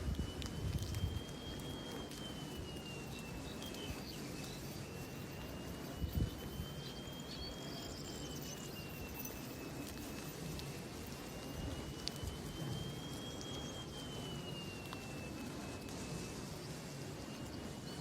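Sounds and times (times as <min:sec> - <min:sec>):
thin high wavering tone: 0:00.0 - 0:18.0
wind rumble on microphone: 0:00.0 - 0:18.0
faint bird chirps: 0:00.4 - 0:18.0.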